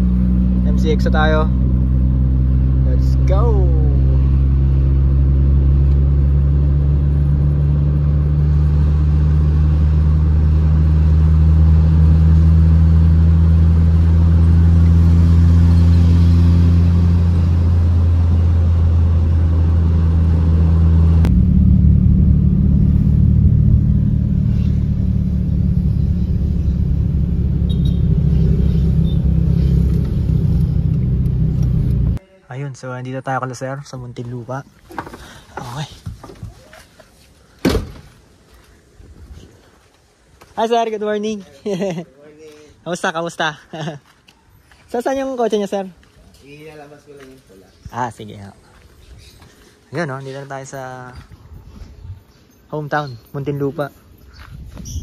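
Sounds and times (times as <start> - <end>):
car engine and road drone: 0.0 - 32.2.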